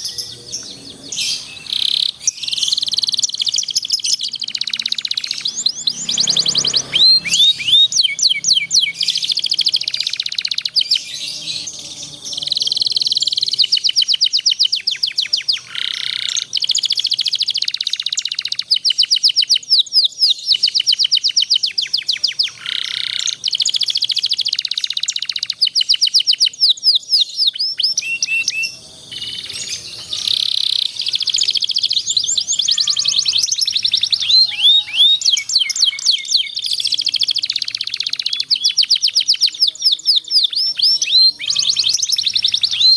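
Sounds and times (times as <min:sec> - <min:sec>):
canary trilling song: 0:00.0 - 0:42.9.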